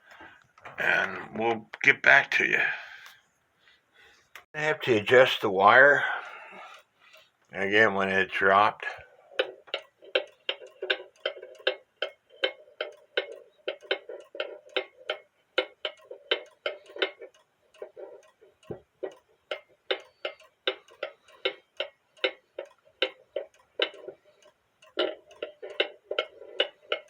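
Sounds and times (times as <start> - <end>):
clock ticking: 4.4 - 27.0.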